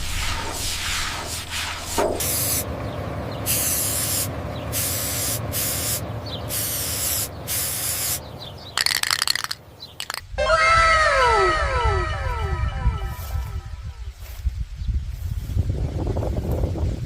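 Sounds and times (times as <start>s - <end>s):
hissing spray bursts: 0.0s - 2.7s, 3.5s - 8.3s
rattle of clicks: 8.8s - 10.3s.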